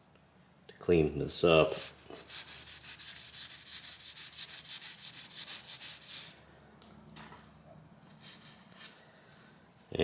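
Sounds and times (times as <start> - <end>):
hand scrubbing on metal: 1.4 - 6.4.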